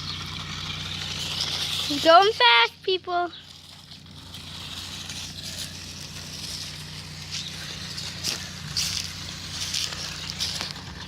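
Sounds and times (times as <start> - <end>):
steady low hum: 0.0 - 11.0
dry leaves rustling and crunching: 3.4 - 11.0.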